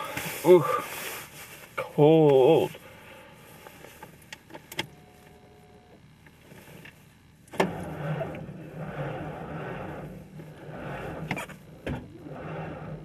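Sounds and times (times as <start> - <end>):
starter motor cranking engine: 7.5 - 13.0.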